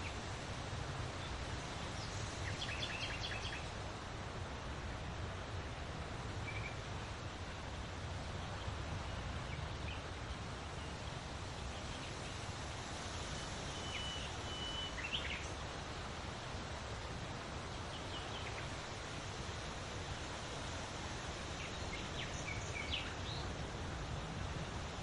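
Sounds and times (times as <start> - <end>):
wind with low rumble: 0.0 - 25.0.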